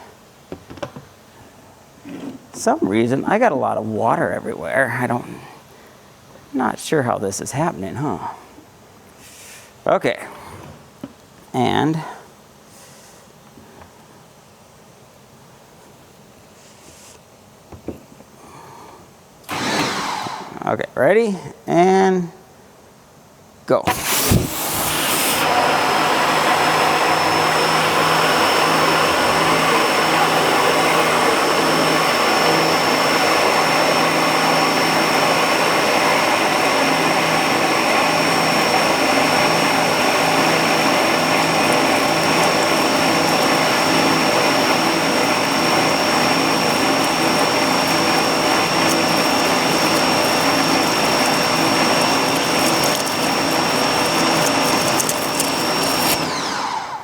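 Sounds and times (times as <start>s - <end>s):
pressure washers spraying water: 23.9s - 56.3s.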